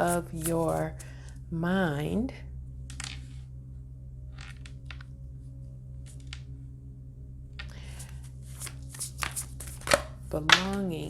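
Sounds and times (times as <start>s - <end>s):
card rustling and flicking: 0.0s - 1.1s, 8.0s - 10.1s
steady low hum: 0.0s - 11.0s
cards sliding: 8.0s - 10.1s.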